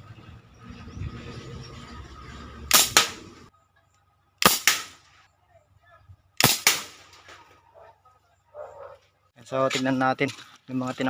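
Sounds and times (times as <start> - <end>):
toy air gun firing: 2.7 - 3.2, 4.4 - 5.0, 6.4 - 7.0.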